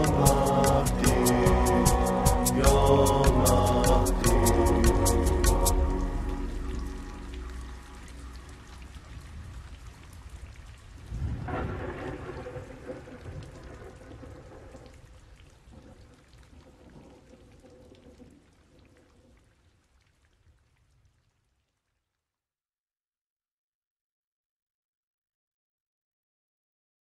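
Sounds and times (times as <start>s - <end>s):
rain falling: 0.0s - 21.8s
low rumble of thunder: 11.0s - 18.5s.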